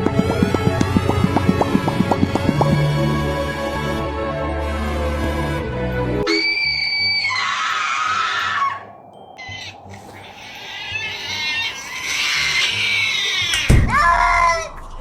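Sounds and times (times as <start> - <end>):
background music: 0.0 - 6.6
high-pitched scream sound effect: 6.3 - 8.8.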